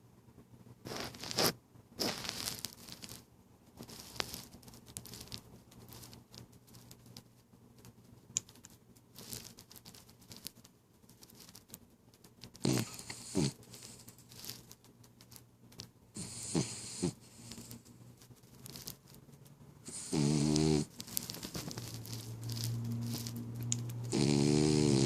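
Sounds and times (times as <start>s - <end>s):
dog snoring: 12.6s - 14.0s, 16.2s - 17.8s, 19.9s - 20.9s, 24.0s - 25.0s.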